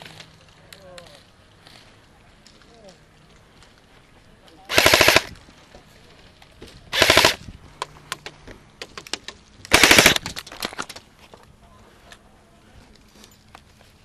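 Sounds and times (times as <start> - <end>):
airsoft gun full-auto bursts: 4.7 - 5.3, 6.9 - 7.4, 9.7 - 10.3.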